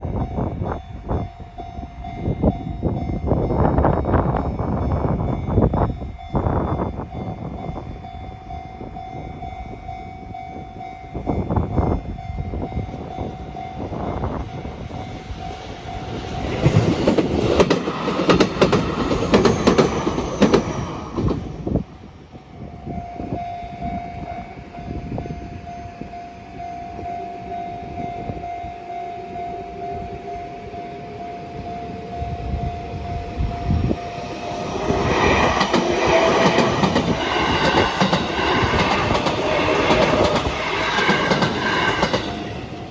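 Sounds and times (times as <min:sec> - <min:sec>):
train passing loudly: 0:00.0 - 0:42.9
train wheels clicking on rails: 0:12.6 - 0:29.0, 0:30.6 - 0:42.9
rising whine: 0:22.6 - 0:42.9
level crossing bell ringing: 0:22.8 - 0:35.0.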